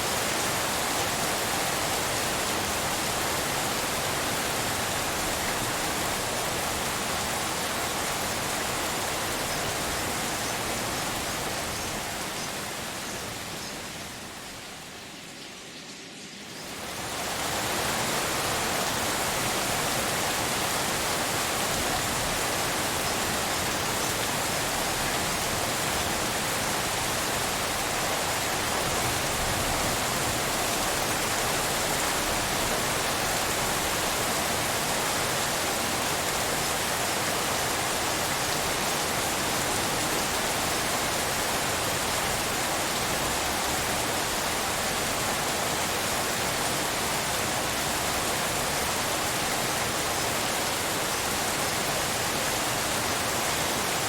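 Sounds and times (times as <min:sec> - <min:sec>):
rain hiss: 0:00.0 - 0:54.0.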